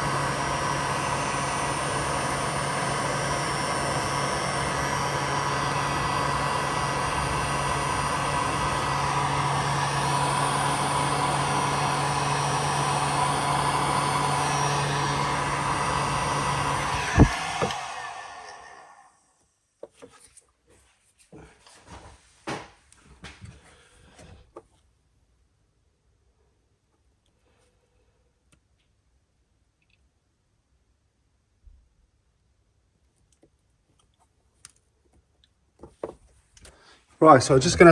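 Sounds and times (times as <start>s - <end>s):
electric motor humming: 0.0s - 19.1s.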